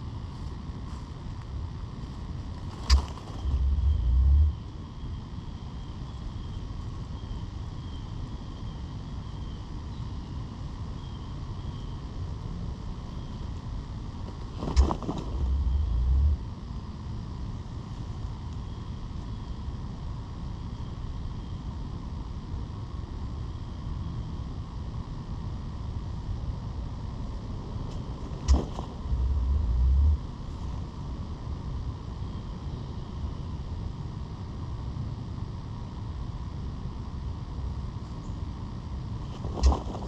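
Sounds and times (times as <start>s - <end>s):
turkey spitting and drumming: 28.4s - 30.2s.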